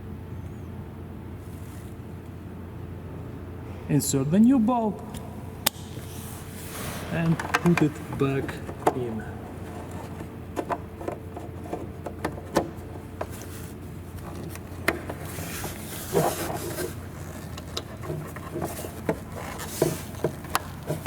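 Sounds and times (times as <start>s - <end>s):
steady low hum: 0.0s - 21.0s
plastic clicks and knocks: 9.8s - 13.4s.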